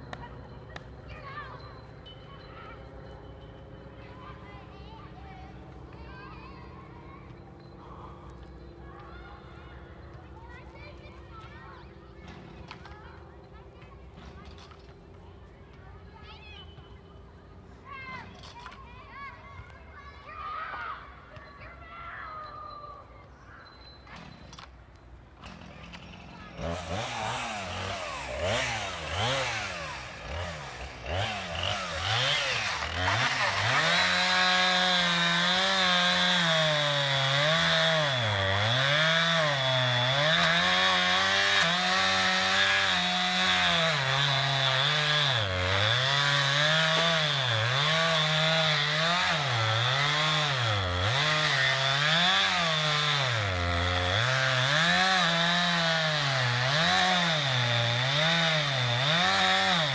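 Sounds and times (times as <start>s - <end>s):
chainsaw cutting wood: 25.4s - 59.9s.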